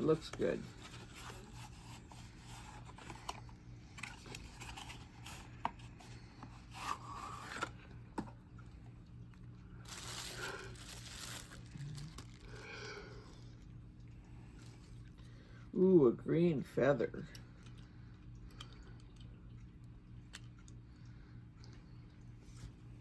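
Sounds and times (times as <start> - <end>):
steady low hum: 0.0 - 23.0
packaging rustling and tearing: 4.0 - 7.8, 9.8 - 13.4.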